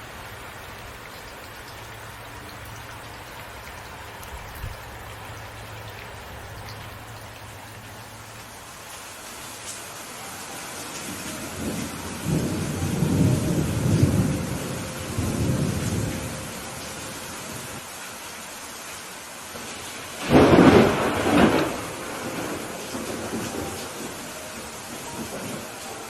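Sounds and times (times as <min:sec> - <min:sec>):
steady rain falling: 0:00.0 - 0:26.0
thunder rumbling: 0:11.6 - 0:16.6, 0:20.2 - 0:25.8
thunder crack: 0:20.2 - 0:24.1.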